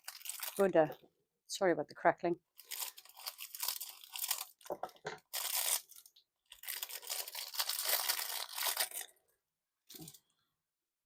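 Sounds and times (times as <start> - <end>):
plastic packaging crinkling: 0.0 - 0.8, 2.6 - 9.2.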